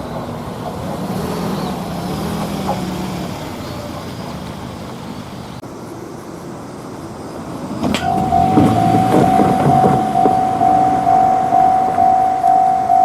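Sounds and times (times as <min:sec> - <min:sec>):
level crossing warning bell: 0:07.9 - 0:13.0.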